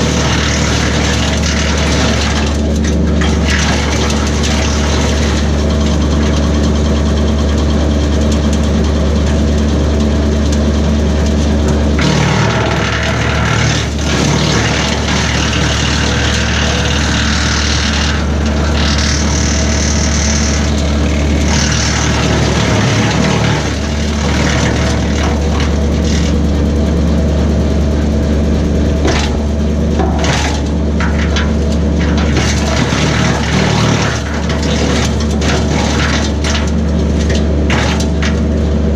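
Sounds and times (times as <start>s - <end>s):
tractor diesel engine: 0.0s - 38.9s
wood chipper running: 0.0s - 38.9s
branches crackling and grinding: 9.0s - 38.9s.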